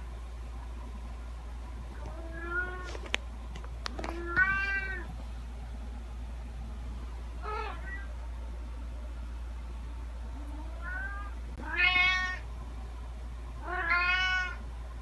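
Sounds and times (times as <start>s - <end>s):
cat meowing: 4.2s - 5.1s, 7.4s - 8.1s, 10.6s - 12.4s, 13.6s - 14.6s.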